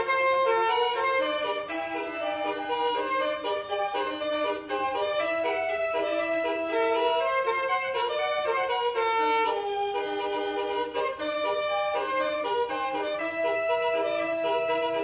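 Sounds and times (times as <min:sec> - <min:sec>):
bus horn playing a melody: 0:00.0 - 0:15.0.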